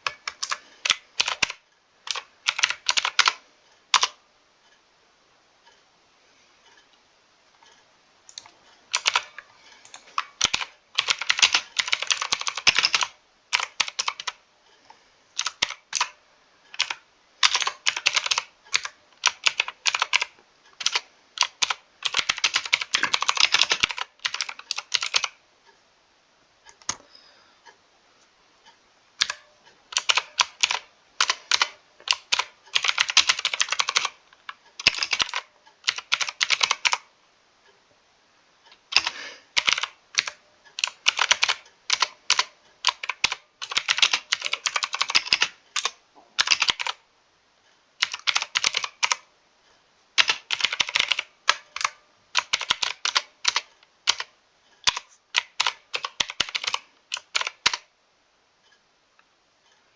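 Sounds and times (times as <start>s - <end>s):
mechanical keyboard typing: 0.0s - 4.2s, 8.3s - 14.4s, 15.4s - 25.4s, 29.2s - 37.1s, 38.7s - 47.0s, 48.0s - 49.3s, 50.2s - 57.9s.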